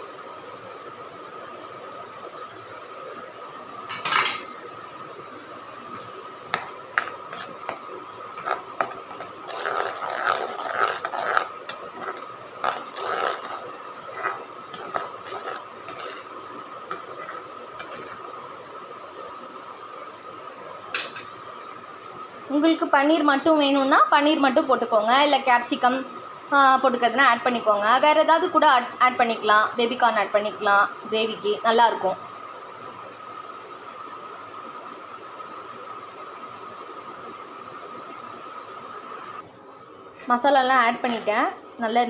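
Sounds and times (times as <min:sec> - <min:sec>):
steady high hum: 0:00.0 - 0:42.0
metal spoon scraping a pan: 0:06.6 - 0:18.3.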